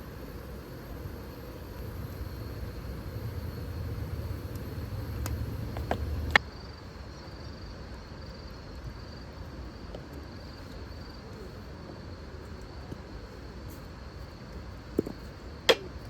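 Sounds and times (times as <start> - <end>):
high-pitched insect trill: 0.0 - 9.2
low rumble: 1.8 - 6.4.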